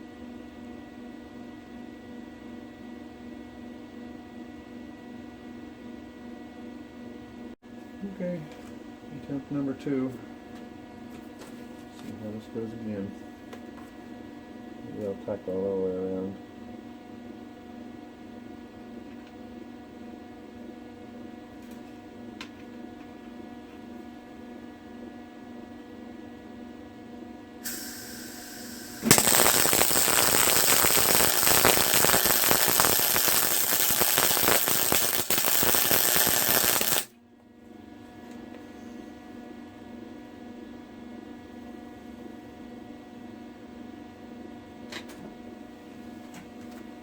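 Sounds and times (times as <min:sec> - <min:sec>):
short hiss: 0:27.6 - 0:37.1
electrical hum: 0:27.6 - 0:37.2
arc welding crackling: 0:27.7 - 0:37.1.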